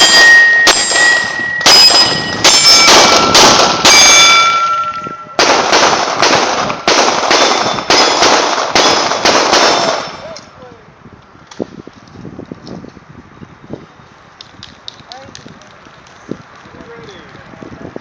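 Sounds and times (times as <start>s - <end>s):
steel plate ringing ding: 0.0s - 5.4s
pistol shots: 0.0s - 10.2s.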